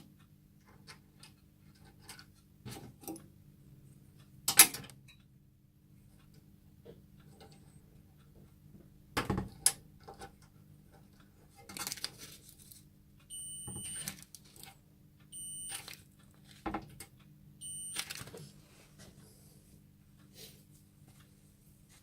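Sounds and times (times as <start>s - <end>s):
short electronic beeps: 13.3s - 14.1s, 15.3s - 15.8s, 17.6s - 18.0s.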